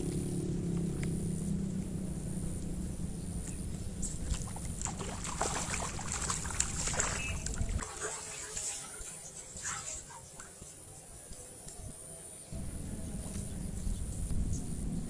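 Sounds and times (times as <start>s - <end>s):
steady low rumble: 0.0s - 7.8s, 12.5s - 15.0s
water splashing and sloshing: 4.0s - 10.6s.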